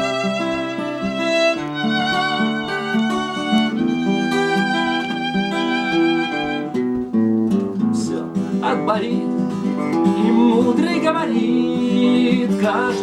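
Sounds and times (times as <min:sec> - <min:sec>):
violin melody with vibrato: 0:00.0 - 0:07.2
acoustic guitar accompaniment: 0:00.0 - 0:13.0.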